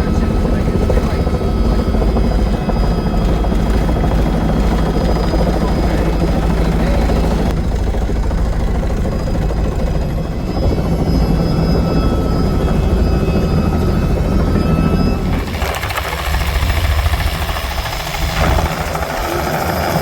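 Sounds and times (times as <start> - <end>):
helicopter engine and rotor drone: 0.0 - 20.0.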